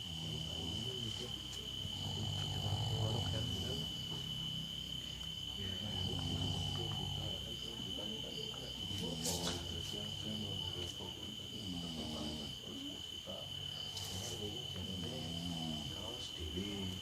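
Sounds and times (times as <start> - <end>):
person snoring: 0.0 - 4.1, 5.6 - 8.0, 8.9 - 10.6, 11.3 - 12.9, 13.7 - 16.9.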